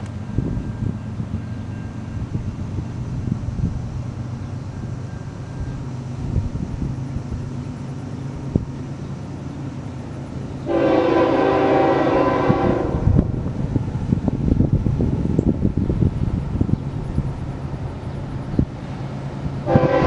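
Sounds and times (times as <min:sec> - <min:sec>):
diesel locomotives running: 0:00.0 - 0:20.0
train air horn blast: 0:10.6 - 0:13.4, 0:19.6 - 0:20.0.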